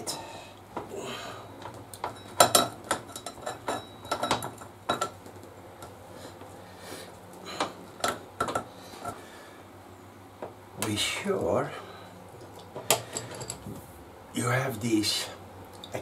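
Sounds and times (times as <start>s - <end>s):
metallic clinks and knocks: 1.6s - 5.2s, 12.8s - 13.7s.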